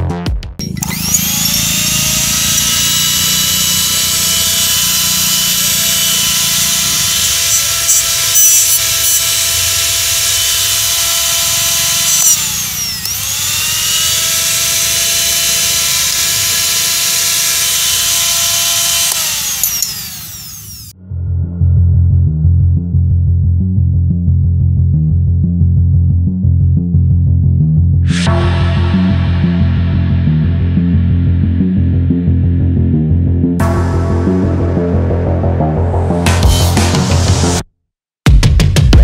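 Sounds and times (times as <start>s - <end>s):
blender motor whining: 0.6s - 20.9s.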